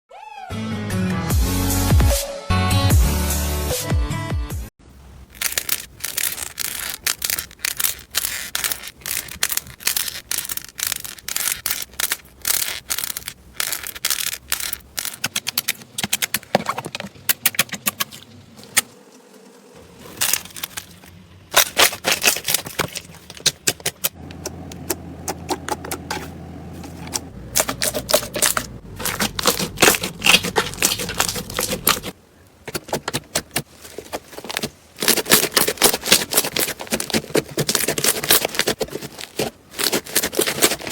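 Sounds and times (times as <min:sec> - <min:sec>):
crunchy slime crackling: 0:05.0 - 0:16.4, 0:19.8 - 0:24.6, 0:25.3 - 0:32.2, 0:32.8 - 0:40.9.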